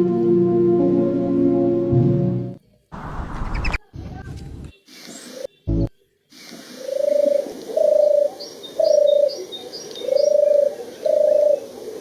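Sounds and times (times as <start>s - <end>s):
small birds chirping faintly: 3.4s - 12.0s
dove cooing: 6.4s - 12.0s.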